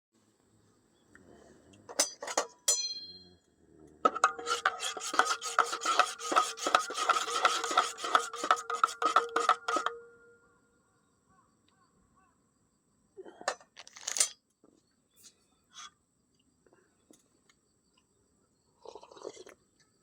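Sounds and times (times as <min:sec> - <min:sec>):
metallic clinks: 0:01.9 - 0:03.4
rasping back-and-forth strokes: 0:04.2 - 0:10.0.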